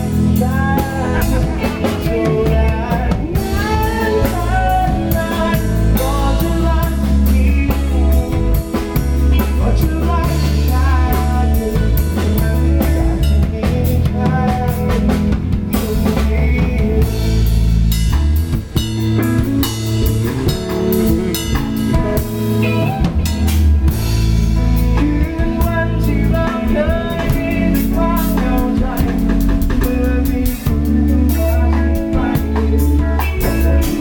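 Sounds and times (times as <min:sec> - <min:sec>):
instrumental pop-rock music: 0:00.0 - 0:34.0.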